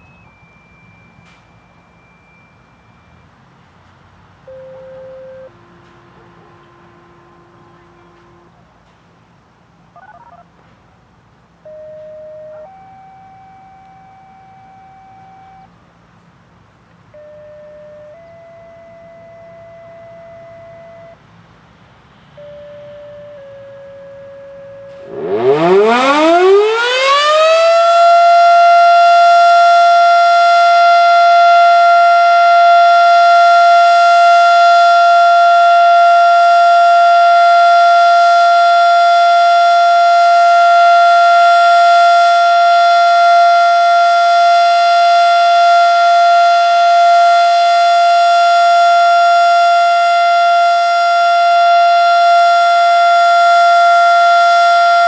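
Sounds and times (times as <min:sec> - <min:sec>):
tornado siren winding up: 0:11.7 - 0:15.7, 0:22.4 - 0:55.0.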